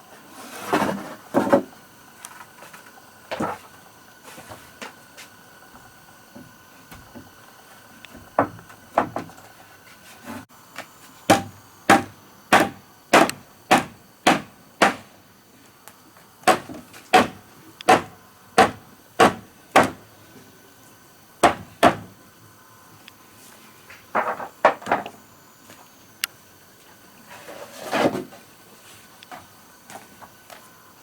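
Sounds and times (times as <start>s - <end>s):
hand tool striking wood: 11.3s - 15.1s, 16.4s - 20.0s, 21.4s - 22.1s.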